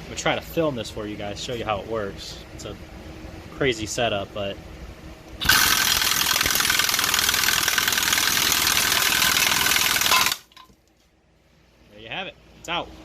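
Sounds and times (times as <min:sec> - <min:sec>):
impact wrench hammering: 0:05.4 - 0:10.8.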